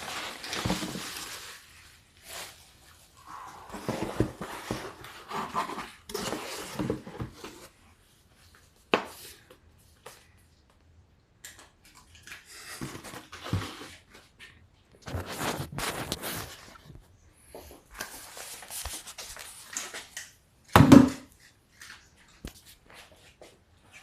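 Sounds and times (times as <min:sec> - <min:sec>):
rubbing and rustling of handling: 0:00.0 - 0:10.4, 0:12.6 - 0:20.3.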